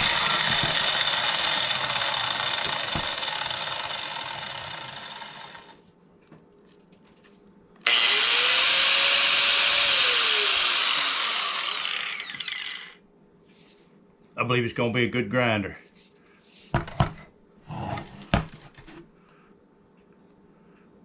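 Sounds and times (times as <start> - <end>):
angle grinder running: 0.0 - 5.8, 7.8 - 13.0.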